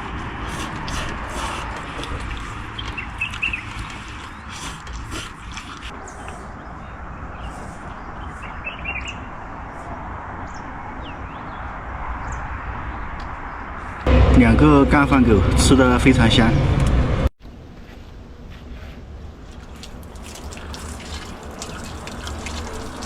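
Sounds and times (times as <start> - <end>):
dogs eating from bowls: 0.5 - 6.0, 19.4 - 23.0.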